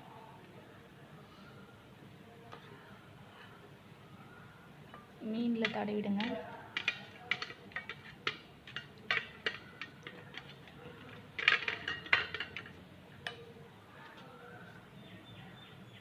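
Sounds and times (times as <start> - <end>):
utensil tapping against a dish: 5.6 - 10.7.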